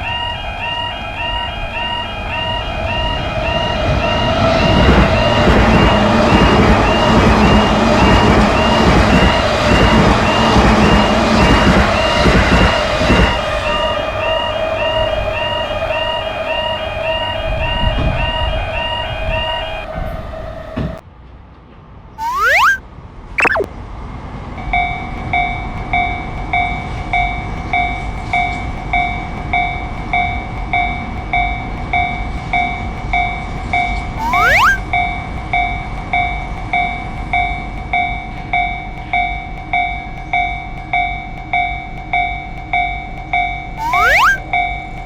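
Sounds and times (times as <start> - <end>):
rising whistle-like sound effects: 22.2 - 22.8, 23.4 - 23.7, 34.2 - 34.8, 43.8 - 44.4.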